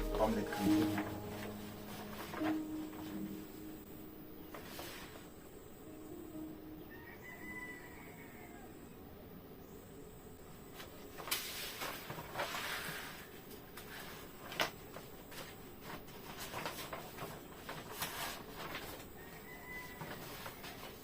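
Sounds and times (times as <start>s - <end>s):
packaging rustling: 0.1s - 3.3s, 11.2s - 21.0s.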